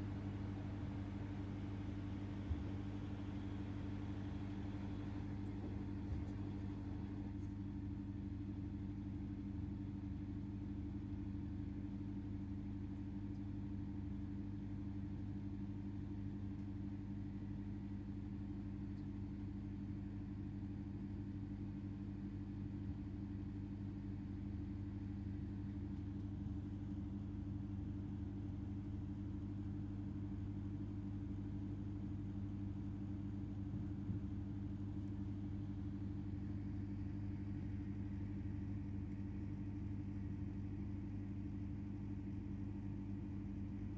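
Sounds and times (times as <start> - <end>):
low electrical hum: 0.0 - 43.9.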